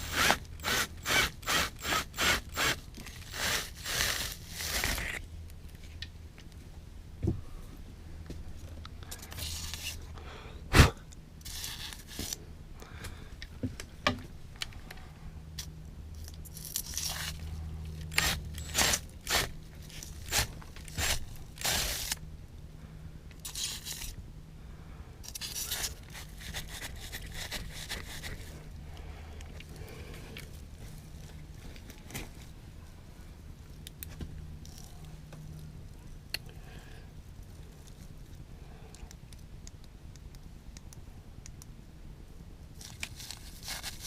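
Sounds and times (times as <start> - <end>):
tool scraping and crunching: 0.0 - 5.2, 11.4 - 12.4, 15.6 - 22.2, 25.2 - 28.6, 42.8 - 44.0.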